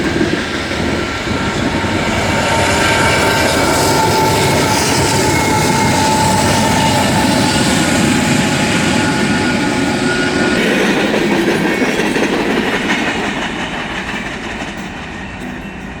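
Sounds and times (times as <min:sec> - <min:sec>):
high wheel squeal: 0:00.0 - 0:16.0
train wheels clattering on rails: 0:00.0 - 0:16.0.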